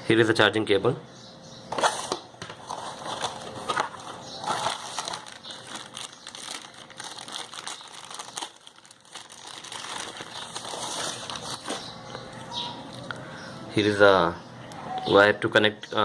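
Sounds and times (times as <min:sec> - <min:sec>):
packaging crinkling and rustling: 0:01.8 - 0:12.5.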